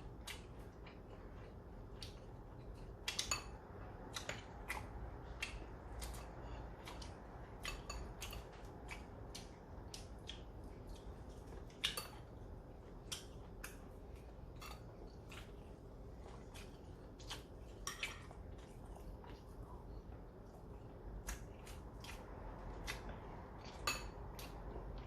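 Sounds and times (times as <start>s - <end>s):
metal cutlery clinking on dishes: 14.6s - 14.9s.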